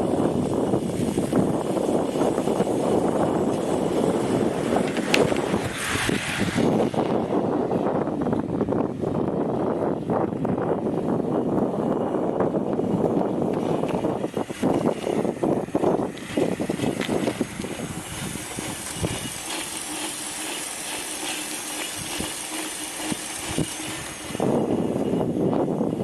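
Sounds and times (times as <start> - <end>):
low motor hum: 0.0 - 26.0
wind buffeting microphone: 0.0 - 26.0
faint wavering high tone: 23.9 - 26.0.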